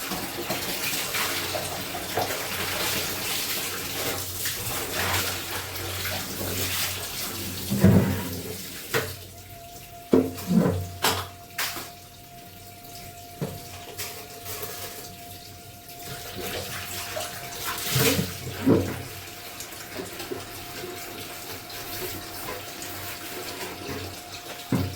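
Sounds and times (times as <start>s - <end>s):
tap water running and splashing: 0.0s - 24.9s
knocks and splashes: 0.4s - 9.2s, 10.1s - 12.0s.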